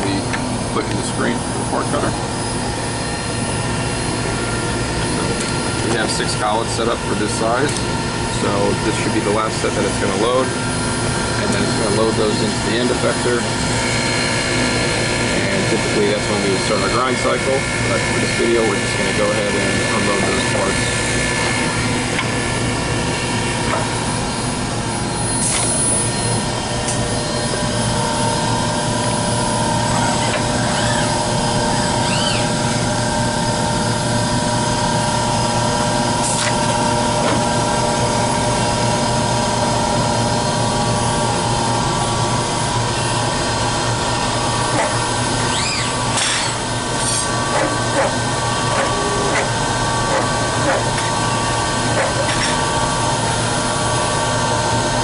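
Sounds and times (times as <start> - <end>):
machine hum: 0.0 - 55.0
robot arm servo whines: 23.4 - 33.0, 44.1 - 52.6.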